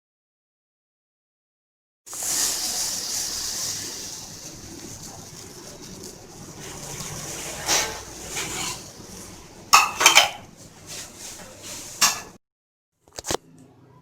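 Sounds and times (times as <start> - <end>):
metal spoon scraping a pot: 6.6 - 8.9.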